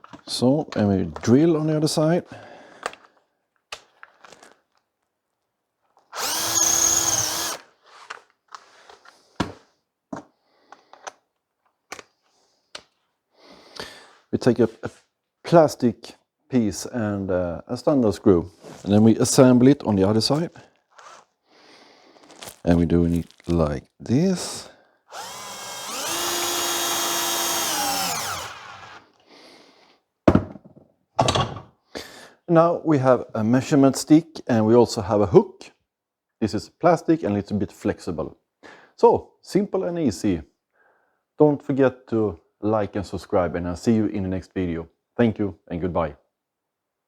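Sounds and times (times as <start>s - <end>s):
power drill boring into wood: 6.1s - 7.7s, 25.1s - 29.2s.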